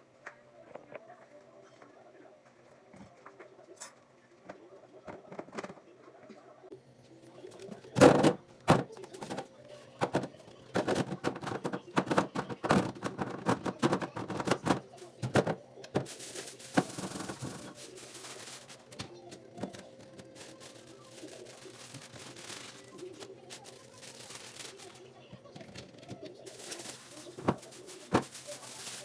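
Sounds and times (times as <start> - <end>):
clattering containers and objects: 7.2 - 29.0.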